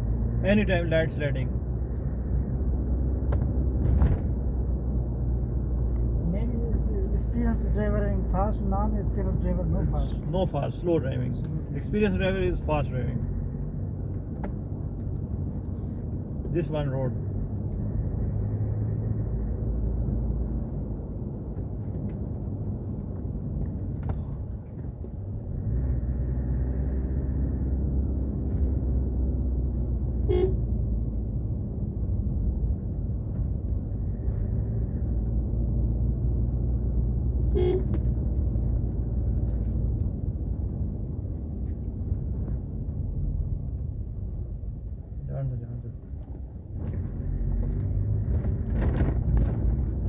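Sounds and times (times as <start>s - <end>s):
vehicle engine and road noise: 0.0s - 50.0s
car horn toot: 30.2s - 30.7s, 37.5s - 38.1s.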